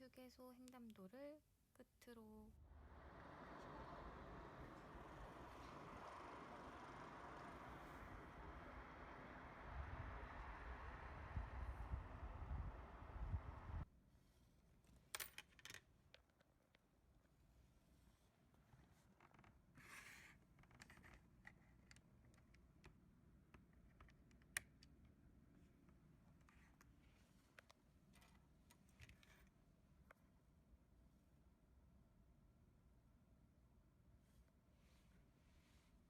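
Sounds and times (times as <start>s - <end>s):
soft rustle: 34.2s - 36.0s.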